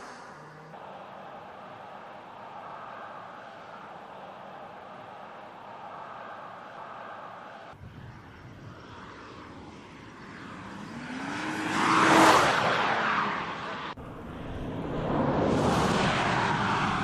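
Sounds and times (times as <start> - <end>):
car engine accelerating: 8.7 - 17.0.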